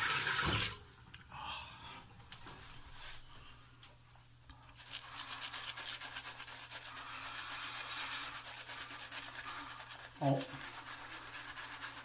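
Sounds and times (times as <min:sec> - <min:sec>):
shaving brush scrubbing stubble: 0:04.8 - 0:12.0.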